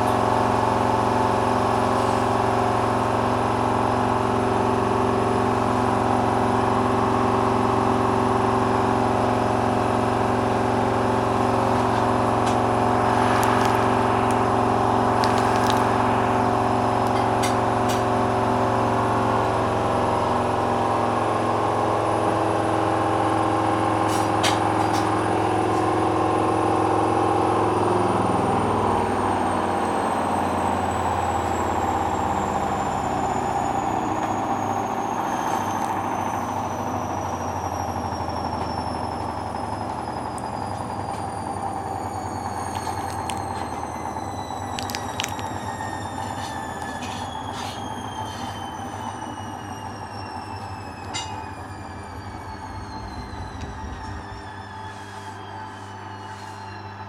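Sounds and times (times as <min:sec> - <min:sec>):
washing machine spinning: 0:00.0 - 0:57.0.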